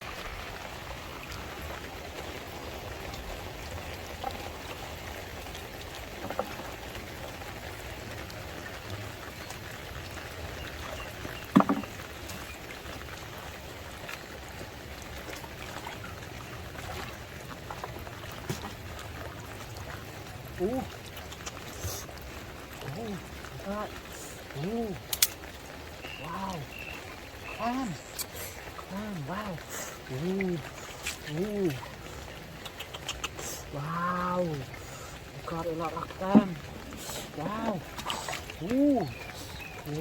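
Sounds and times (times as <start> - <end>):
water dripping and splashing: 0.0 - 40.0
faint clicks: 25.0 - 26.2, 32.5 - 33.5.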